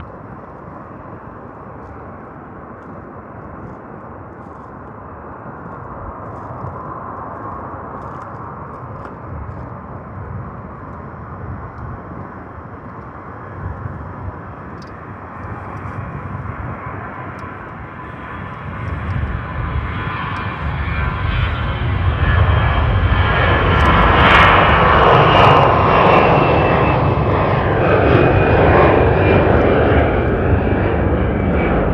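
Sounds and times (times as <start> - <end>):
jet engines at takeoff: 0.0 - 31.9
high engine whine: 11.1 - 31.9.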